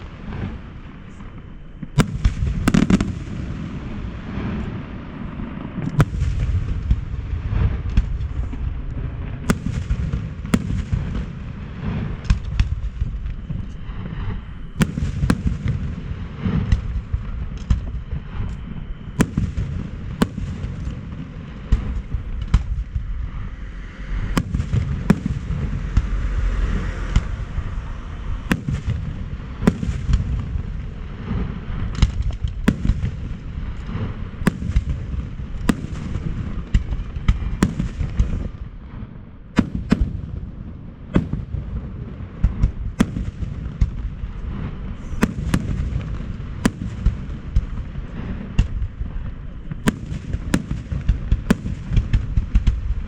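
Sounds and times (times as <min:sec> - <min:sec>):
low rumble of detonations: 0:00.0 - 0:53.0.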